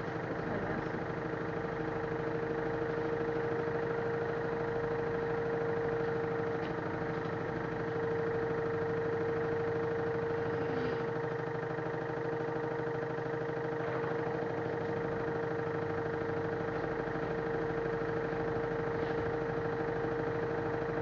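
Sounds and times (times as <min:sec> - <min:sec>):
washing machine spinning: 0:00.0 - 0:21.0.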